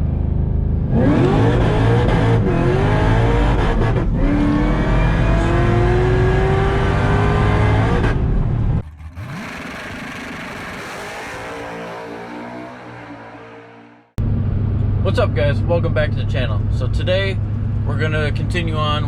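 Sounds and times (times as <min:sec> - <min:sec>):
car engine accelerating hard: 0:00.8 - 0:15.0.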